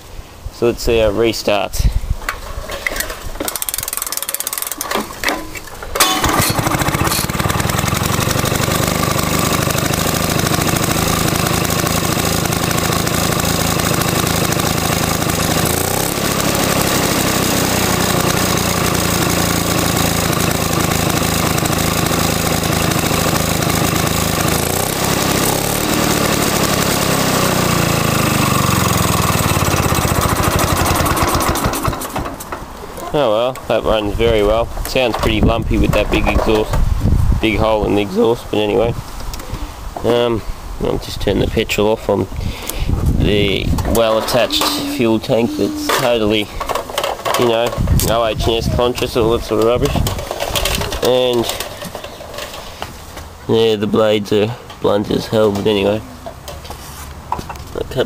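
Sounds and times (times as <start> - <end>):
lawn mower engine running: 2.4 - 32.8, 42.4 - 53.4.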